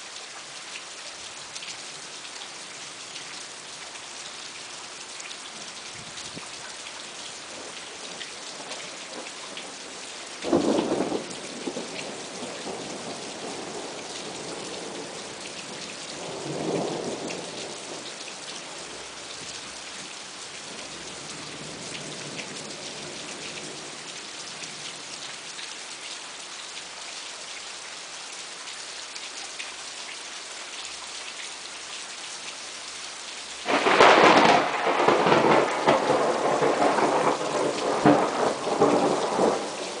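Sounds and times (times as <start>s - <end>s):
steady rain: 0.0s - 40.0s
rumble of thunder: 8.7s - 15.3s, 16.2s - 18.1s, 33.7s - 40.0s
loud thunderclap: 33.7s - 40.0s.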